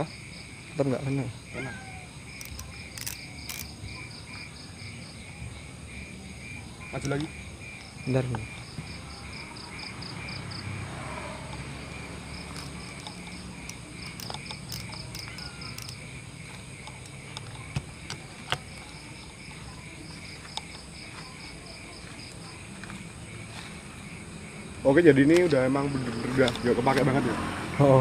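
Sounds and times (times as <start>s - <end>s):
frogs and insects calling: 0.0s - 28.0s
sharp clicks: 2.4s - 3.8s, 12.4s - 16.0s.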